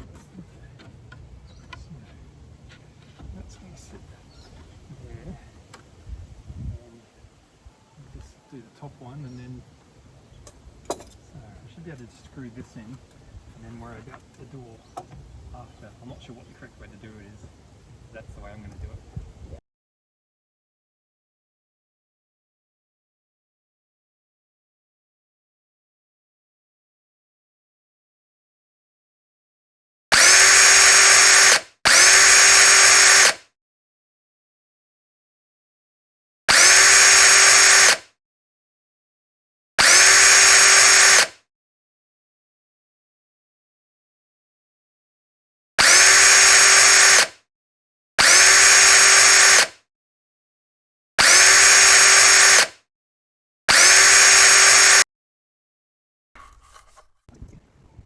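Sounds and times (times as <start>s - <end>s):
power drill driving screws: 30.1s - 33.4s, 36.5s - 38.1s, 39.8s - 41.4s, 45.8s - 47.4s, 48.2s - 49.8s, 51.2s - 52.8s, 53.7s - 55.1s.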